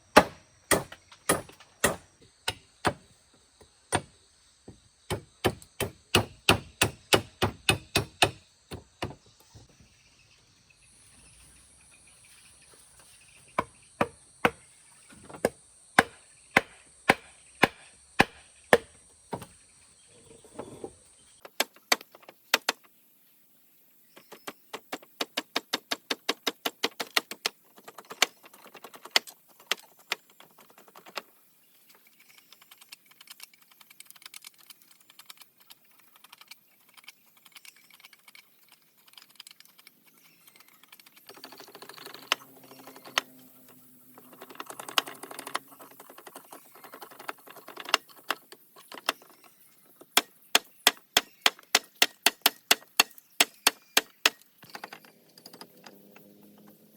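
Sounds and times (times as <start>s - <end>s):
hand tool chopping blows: 0.1s - 3.1s, 5.1s - 9.2s, 15.4s - 19.5s.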